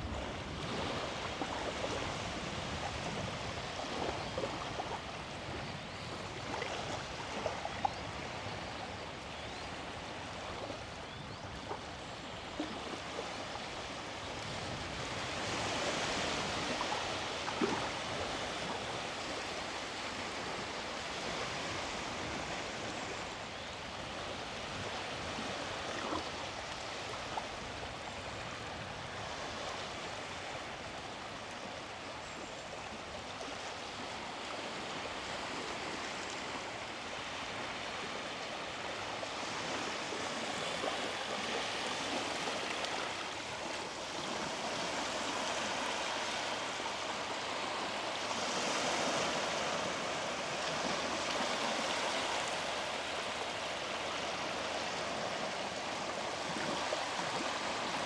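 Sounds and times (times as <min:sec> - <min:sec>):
sea waves washing onto beach: 0:33.6 - 0:58.0.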